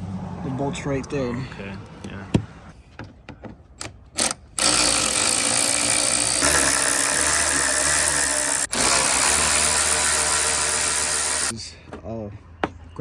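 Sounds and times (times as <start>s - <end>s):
motor-driven machine running: 4.6s - 11.5s.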